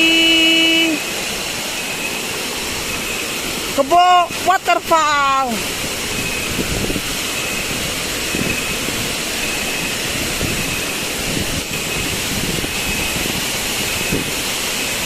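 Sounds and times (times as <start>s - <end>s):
faint high tone: 0.0s - 1.0s
waterfall rushing: 0.0s - 15.0s.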